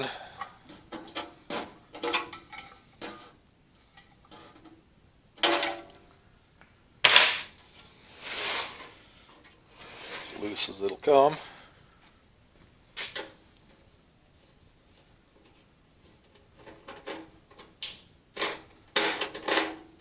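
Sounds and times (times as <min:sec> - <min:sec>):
metal scraping: 0:08.0 - 0:09.0, 0:09.7 - 0:10.9
metal clicks and clanks: 0:16.3 - 0:20.0.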